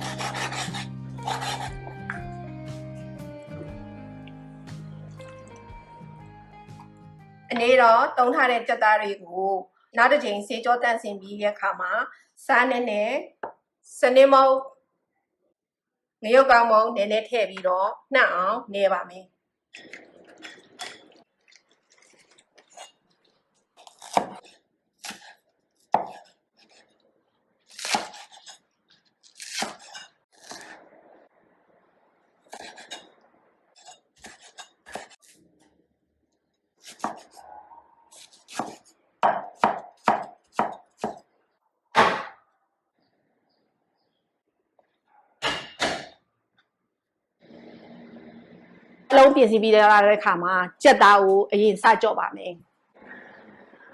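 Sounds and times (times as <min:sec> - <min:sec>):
knife chopping on cutting board: 0:00.0 - 0:02.3, 0:24.0 - 0:25.3, 0:25.9 - 0:26.8, 0:34.2 - 0:35.2, 0:36.8 - 0:37.4, 0:38.2 - 0:41.2, 0:42.0 - 0:42.4.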